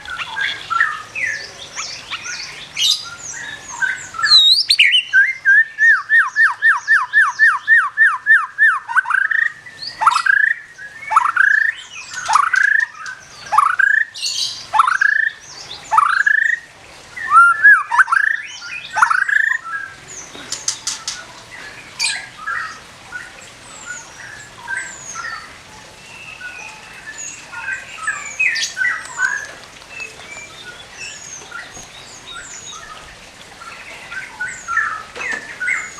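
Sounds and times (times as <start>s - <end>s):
soft bird chirps and twitters: 0.0s - 35.9s
bird singing whistled notes: 0.1s - 13.0s.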